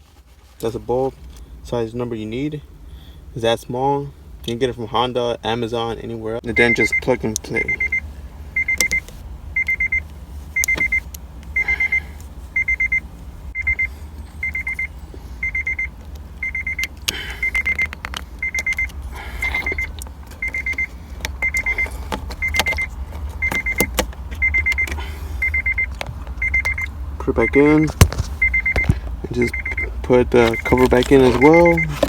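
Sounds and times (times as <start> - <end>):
electronic warning chime beeping: 6.5 - 8.0, 8.6 - 9.0, 9.6 - 10.0, 10.6 - 11.0, 11.6 - 13.0, 13.6 - 32.0.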